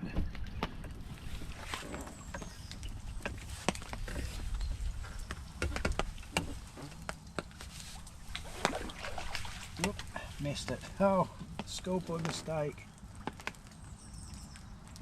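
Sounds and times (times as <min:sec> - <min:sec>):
wind rumble on microphone: 0:00.0 - 0:07.3.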